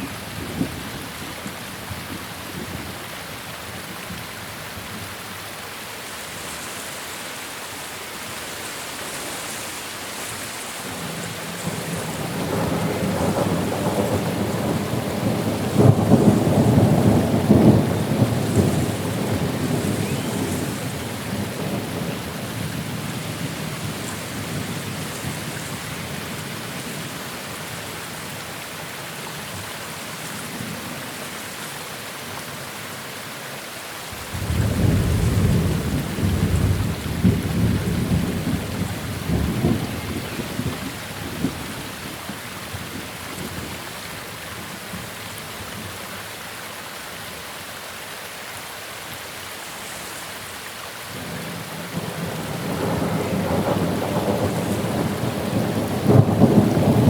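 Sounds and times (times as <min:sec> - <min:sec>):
steady rain: 0:00.0 - 0:57.0
thunder rolling: 0:34.3 - 0:41.8, 0:52.0 - 0:57.0.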